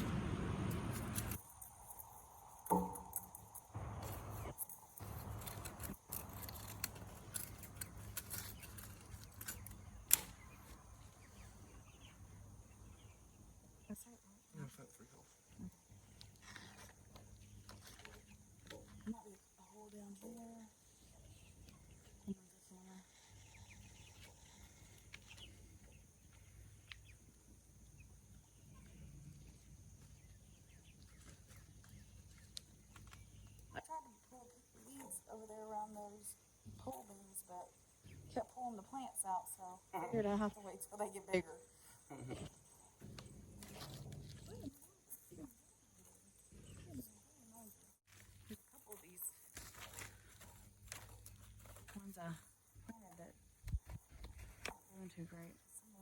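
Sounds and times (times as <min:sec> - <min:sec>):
low steady rumble: 0:00.0 - 0:01.4
handling clicks and rustles: 0:00.0 - 0:11.4.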